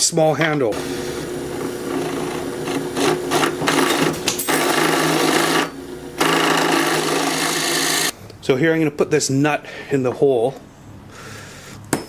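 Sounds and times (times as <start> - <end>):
grinding on workpiece: 0.7 - 8.1
power tool motor running: 0.7 - 8.1.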